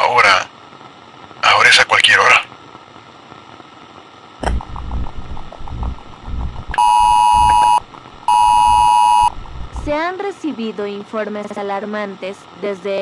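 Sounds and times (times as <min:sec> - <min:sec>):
emergency alert beeps: 0:06.8 - 0:09.4.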